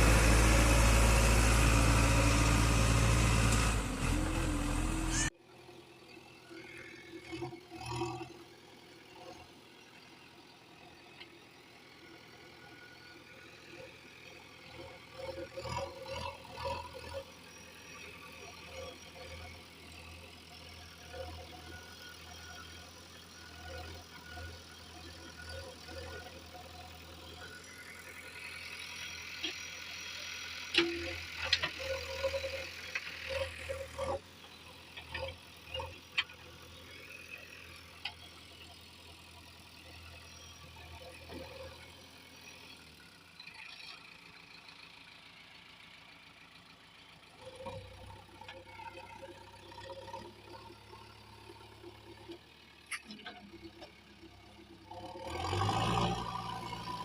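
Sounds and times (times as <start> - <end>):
heavy diesel engine running: 0.0 - 5.3.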